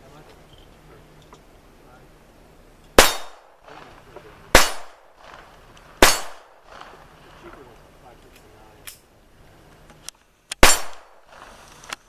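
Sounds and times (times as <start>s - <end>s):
gunshots with echo: 3.0s - 3.9s, 4.5s - 7.0s, 10.6s - 11.4s.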